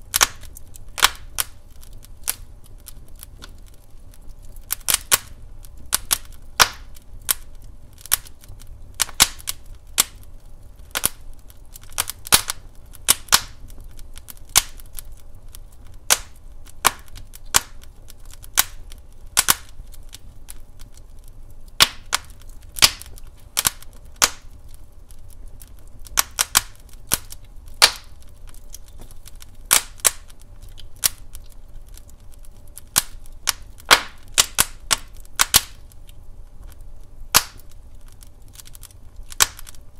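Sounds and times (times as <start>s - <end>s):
low rumble of flames: 0.0s - 39.9s
wood fire crackling and popping: 0.0s - 39.9s.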